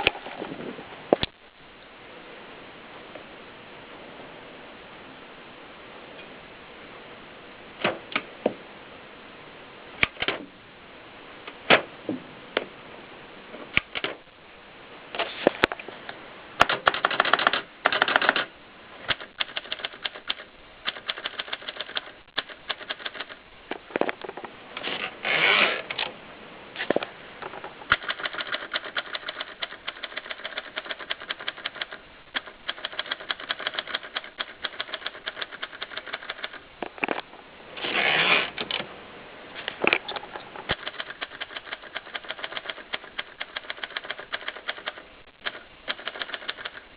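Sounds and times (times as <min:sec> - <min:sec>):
typewriter mechanical rattles: 0:13.8 - 0:14.2, 0:16.6 - 0:18.5, 0:19.1 - 0:23.4, 0:27.4 - 0:36.7, 0:40.0 - 0:46.9
typewriter keystrokes clacking: 0:16.6 - 0:18.5, 0:19.1 - 0:23.4, 0:27.9 - 0:36.6, 0:40.7 - 0:46.9.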